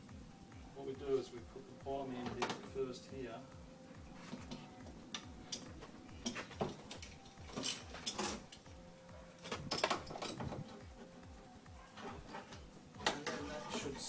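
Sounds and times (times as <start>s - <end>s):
metal part clinking and rattling: 4.5s - 8.8s, 9.4s - 10.9s.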